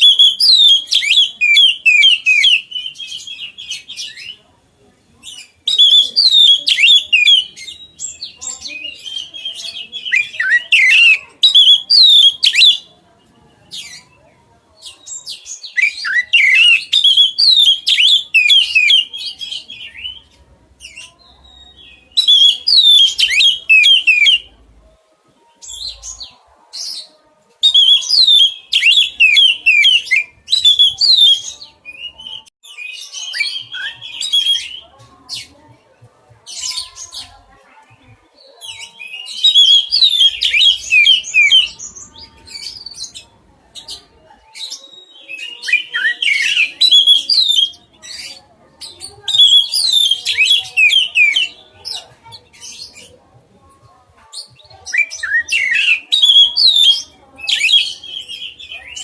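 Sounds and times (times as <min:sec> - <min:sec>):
songbird chirping and trilling: 0:00.0 - 0:59.0.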